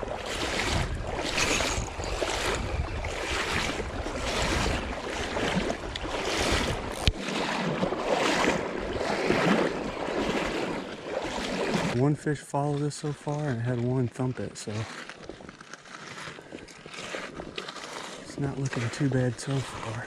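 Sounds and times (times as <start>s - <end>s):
wind buffeting microphone: 0.0s - 10.8s
rushing creek: 0.0s - 20.0s.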